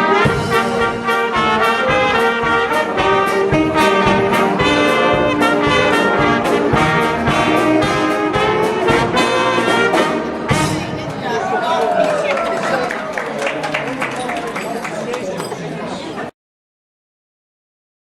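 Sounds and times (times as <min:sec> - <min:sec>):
steady drum beat: 0:00.0 - 0:11.0
trumpets and trombones melody: 0:00.0 - 0:11.2
orchestra playing up-tempo piece: 0:00.0 - 0:11.4.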